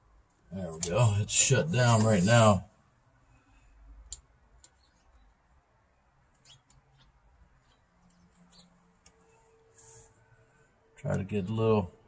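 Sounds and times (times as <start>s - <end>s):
faint clicks: 4.0s - 4.8s.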